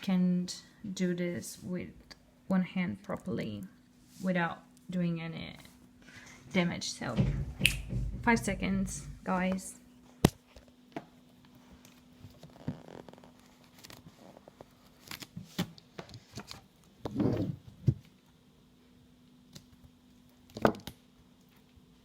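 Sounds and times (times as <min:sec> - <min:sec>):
packaging rustling and tearing: 0:12.0 - 0:16.7.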